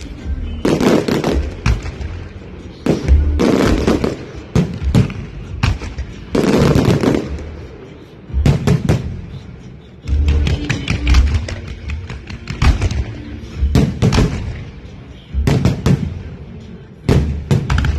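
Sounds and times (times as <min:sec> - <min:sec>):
firecrackers crackling: 0:00.0 - 0:17.9
firework bangs: 0:00.6 - 0:07.7, 0:10.2 - 0:14.8.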